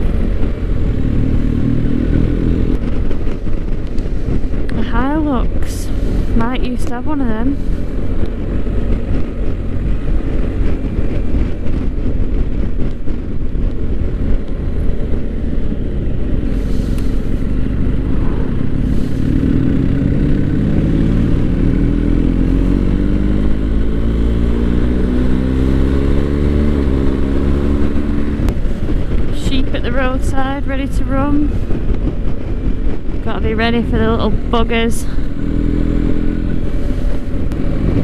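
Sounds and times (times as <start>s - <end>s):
motorcycle engine accelerating: 0.0s - 38.0s
wind rushing: 0.0s - 38.0s.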